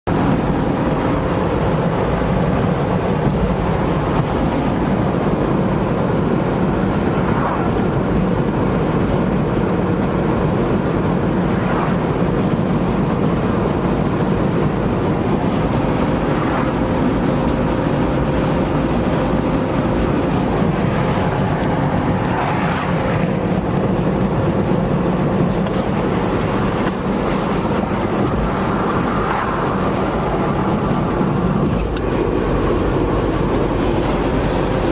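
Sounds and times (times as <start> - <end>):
vehicle rumbling in motion: 0.0 - 34.9.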